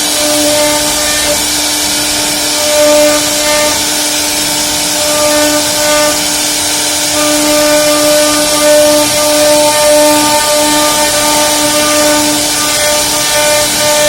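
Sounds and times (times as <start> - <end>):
router spindle cutting wood: 0.0 - 14.0.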